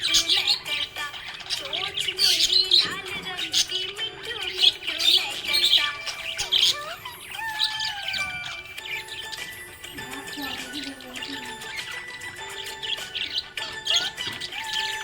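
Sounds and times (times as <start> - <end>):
background music: 0.0 - 15.0
budgerigars chirping and squawking: 0.0 - 15.0.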